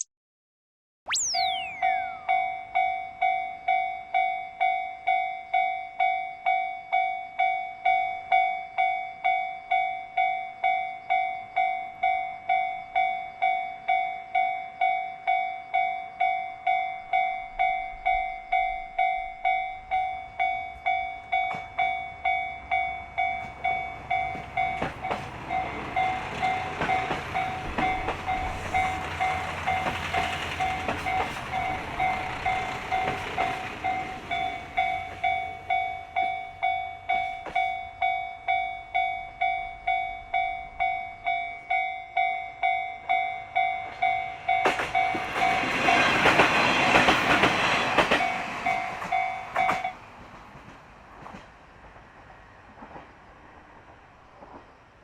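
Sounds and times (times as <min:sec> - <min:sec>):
level crossing warning bell: 0:01.8 - 0:50.1
train rumble: 0:17.1 - 0:55.0
wheel clatter on rails: 0:24.3 - 0:34.5.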